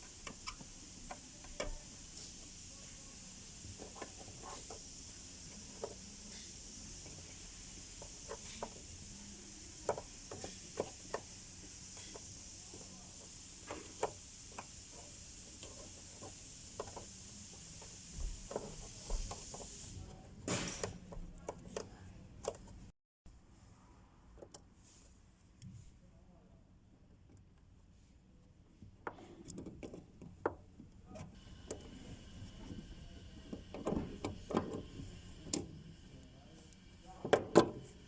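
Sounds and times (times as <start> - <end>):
steady high hiss: 0.0 - 21.5.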